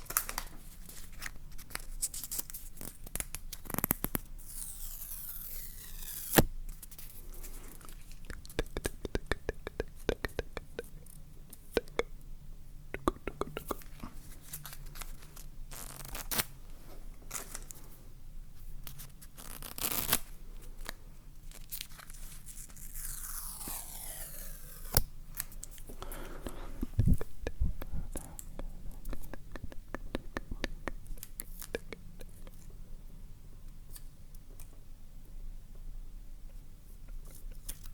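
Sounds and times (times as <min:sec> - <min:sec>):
sharp clicks and taps: 0:08.2 - 0:12.2, 0:12.9 - 0:13.9, 0:27.0 - 0:32.6.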